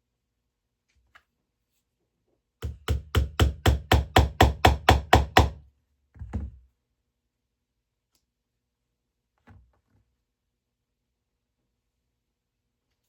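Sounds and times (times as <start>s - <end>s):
knocks on wooden board: 2.6s - 5.6s.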